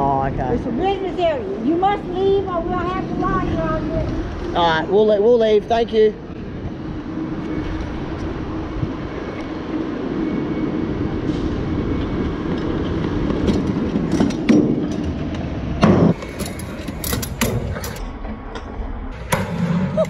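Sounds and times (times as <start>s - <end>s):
scooter wheels rolling on pavement: 9.7s - 19.0s.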